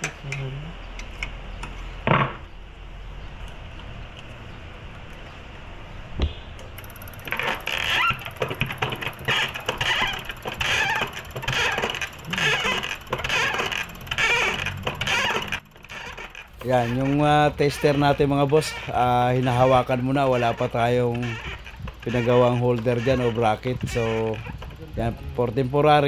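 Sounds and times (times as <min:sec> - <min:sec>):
fuel injector spurting: 0:06.8 - 0:25.2.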